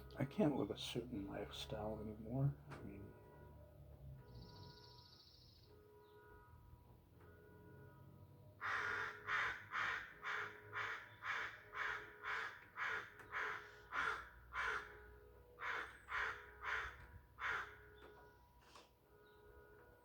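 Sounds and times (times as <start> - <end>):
bird harsh calls: 8.6 - 15.0, 15.6 - 17.8.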